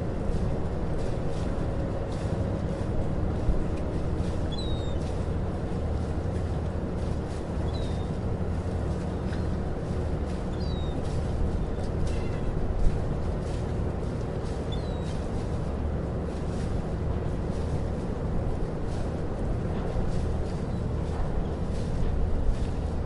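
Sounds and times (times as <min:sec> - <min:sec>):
boat engine rumbling: 0:00.0 - 0:23.0
birds chirping: 0:04.5 - 0:05.0, 0:07.6 - 0:08.2, 0:10.5 - 0:11.0, 0:14.7 - 0:15.1.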